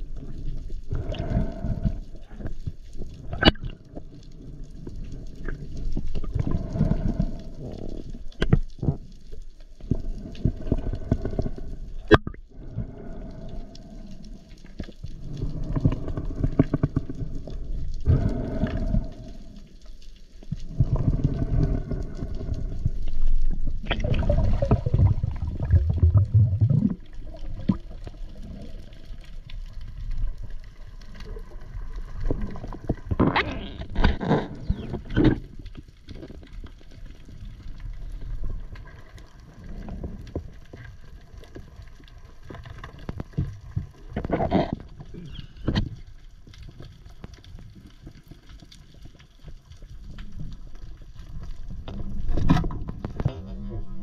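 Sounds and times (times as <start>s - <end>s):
underwater rumbling surges: 15.1s - 19.7s, 20.6s - 35.4s.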